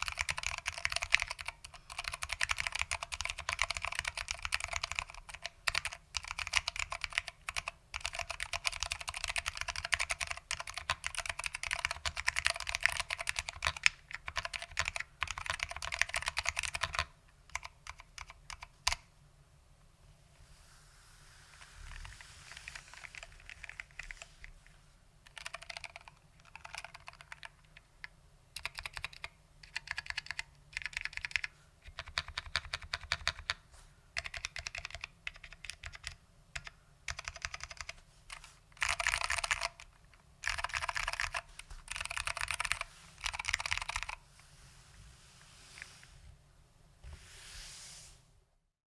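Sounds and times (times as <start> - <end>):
rapid keyboard key clicks: 0.0 - 19.0, 25.3 - 27.9, 28.6 - 33.6, 34.2 - 44.2.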